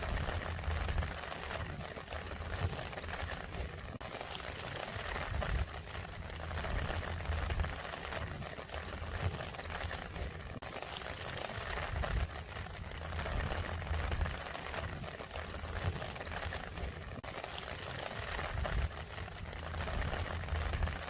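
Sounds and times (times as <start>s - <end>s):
low rumble: 0.0s - 1.2s, 6.3s - 7.8s, 12.8s - 14.9s, 18.5s - 21.0s
rain pattering: 0.0s - 21.0s.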